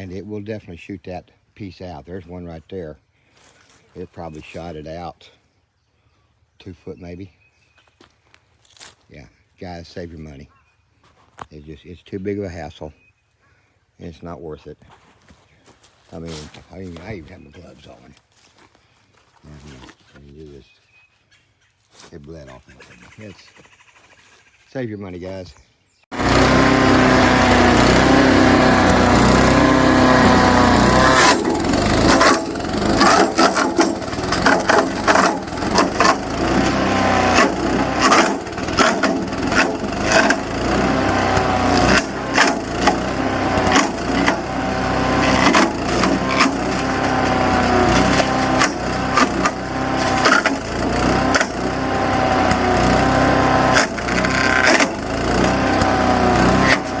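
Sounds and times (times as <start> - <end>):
wood chipper engine running: 0.0 - 0.3, 26.1 - 57.0
wood cracking and crunching: 27.0 - 57.0.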